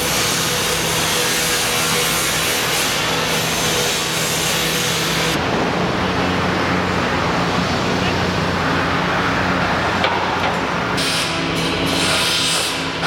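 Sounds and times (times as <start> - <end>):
engine hum: 0.0 - 13.0
tyres and air hissing: 10.7 - 13.0.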